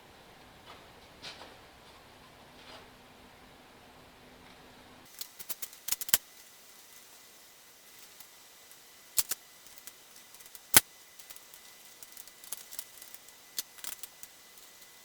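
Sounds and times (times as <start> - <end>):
metallic clicks of hand tools: 9.2 - 14.8.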